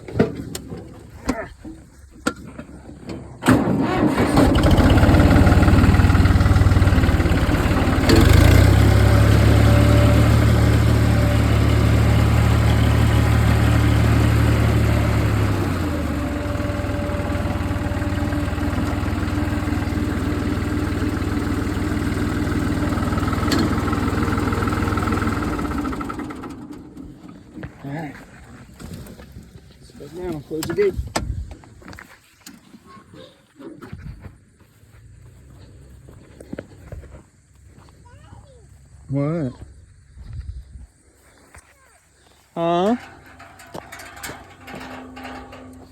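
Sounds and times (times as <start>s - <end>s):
tractor engine running: 0.0s - 29.5s, 42.3s - 45.9s.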